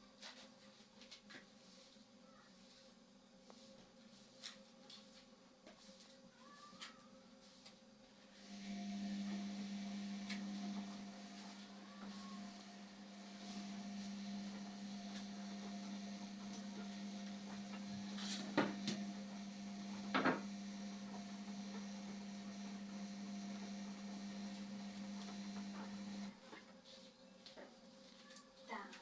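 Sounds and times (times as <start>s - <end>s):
washing machine humming: 7.9s - 26.5s.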